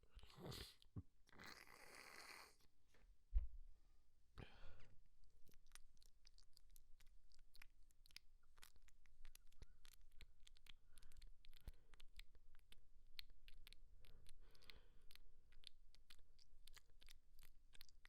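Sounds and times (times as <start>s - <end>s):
faint small clicks and crackles: 4.8s - 18.0s.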